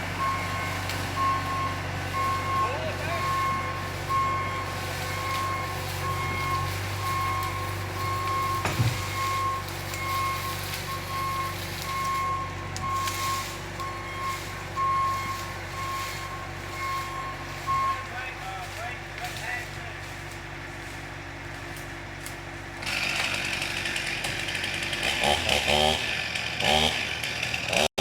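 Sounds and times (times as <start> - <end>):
reversing alarm beeping: 0.0 - 19.8
vehicle engine running: 0.0 - 28.0.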